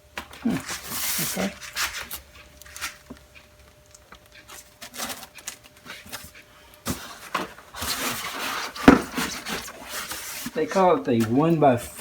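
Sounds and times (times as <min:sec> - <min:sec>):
paper and packaging rustling: 0:04.0 - 0:12.0.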